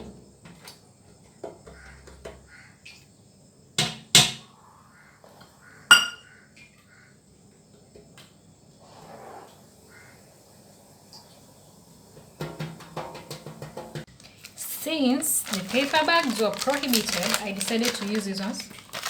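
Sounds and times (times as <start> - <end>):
sharp knocks of kitchenware: 3.8 - 4.4, 5.9 - 6.3
faint handling noises: 14.1 - 19.0.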